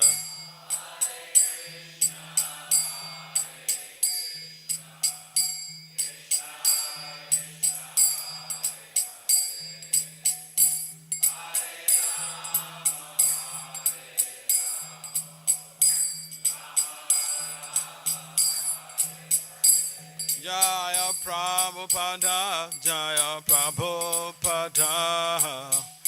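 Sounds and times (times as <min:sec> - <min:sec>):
hand cymbals struck: 0:00.0 - 0:26.0.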